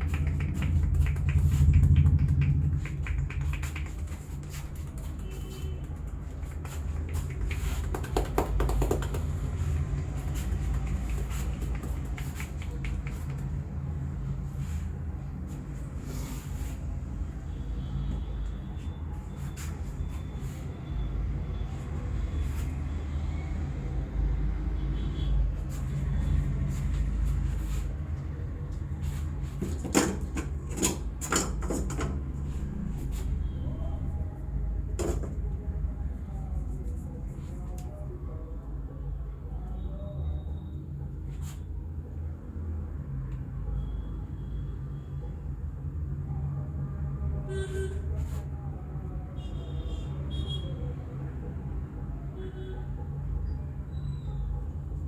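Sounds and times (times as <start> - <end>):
sharp slaps and clicks: 0.0 - 5.3, 5.9 - 9.6, 10.3 - 13.6
low steady rumble: 0.0 - 7.6
hands rubbing skin: 0.0 - 13.6.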